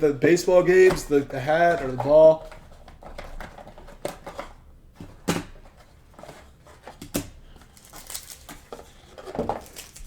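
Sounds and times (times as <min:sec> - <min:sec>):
cards rustling: 0:05.8 - 0:10.0.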